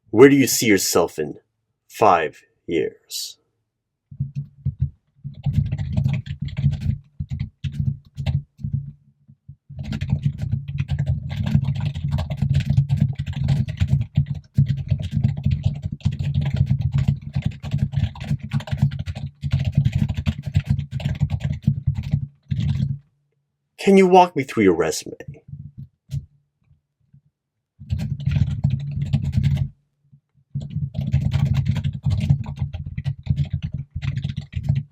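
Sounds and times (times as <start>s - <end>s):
fast typing on a keyboard: 4.1s - 9.0s, 9.7s - 23.0s, 27.8s - 29.8s, 30.5s - 34.9s.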